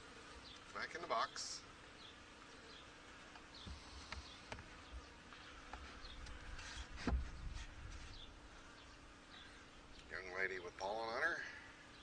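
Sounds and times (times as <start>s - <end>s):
honey bees buzzing: 0.0s - 12.0s
light knocks on hive: 5.7s - 7.4s.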